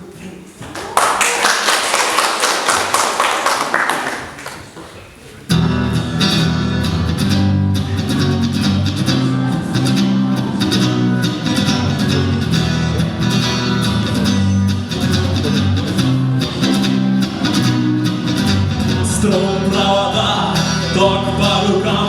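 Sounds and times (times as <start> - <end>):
guitar strumming: 5.5 - 22.0.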